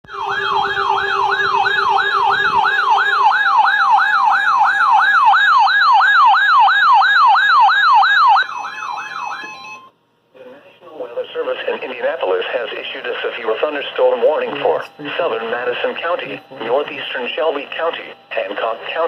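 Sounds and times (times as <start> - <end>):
electronic siren yelping: 0.1 - 9.9.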